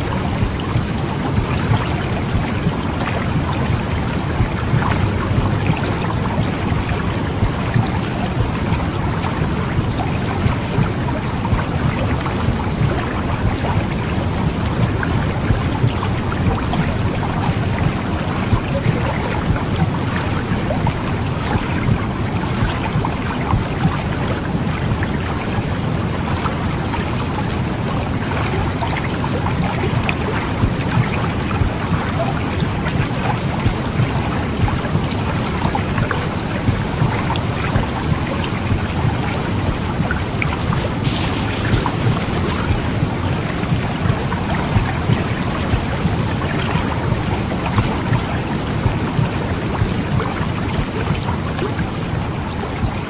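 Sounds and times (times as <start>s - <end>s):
low rumbling womb sound: 33.6s - 50.2s.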